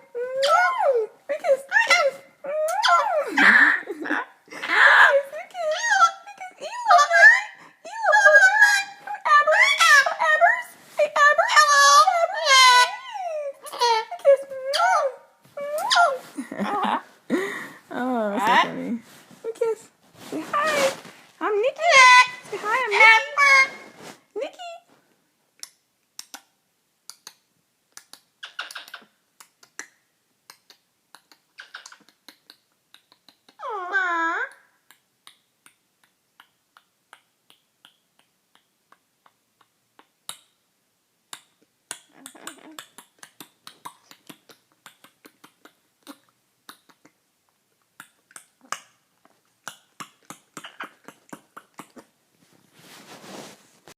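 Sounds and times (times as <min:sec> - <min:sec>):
bird tongue and beak clicks: 0:27.1 - 0:33.6.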